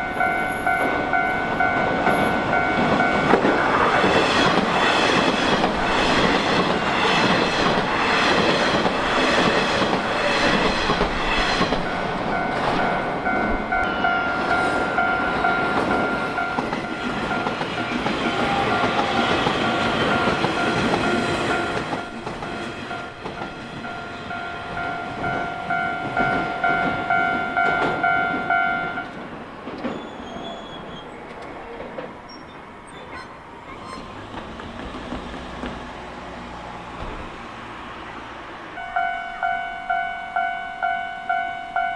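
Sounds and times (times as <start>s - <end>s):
level crossing bell ringing: 0.0s - 3.7s, 11.9s - 29.2s, 38.8s - 41.9s
train wheels clacking: 0.0s - 36.0s.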